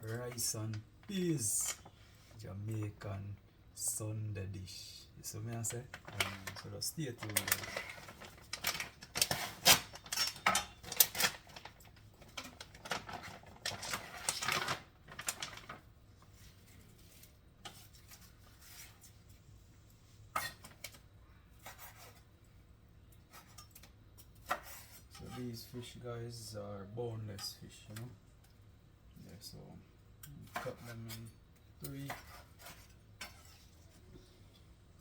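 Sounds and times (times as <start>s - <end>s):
kitchen clicks and clatter: 5.9s - 15.8s.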